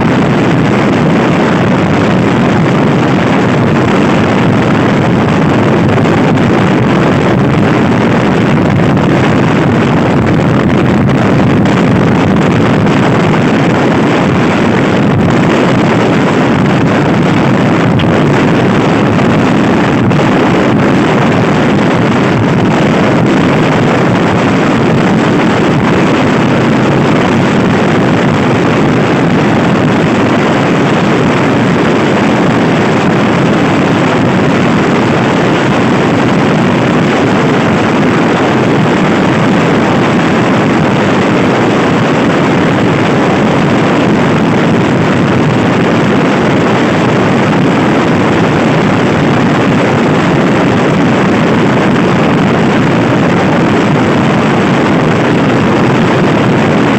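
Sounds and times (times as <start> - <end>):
wind rushing over microphone: 0.0 - 56.9.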